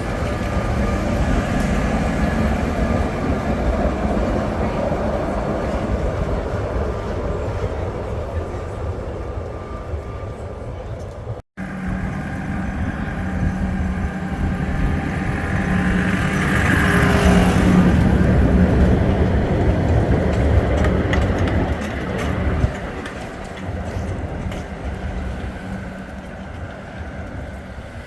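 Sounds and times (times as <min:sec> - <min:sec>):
vehicle passing by: 0:11.6 - 0:22.6.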